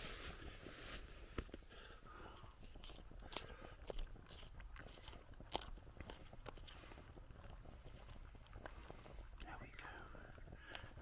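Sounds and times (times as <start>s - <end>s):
small clicks and crunches: 2.4s - 10.9s.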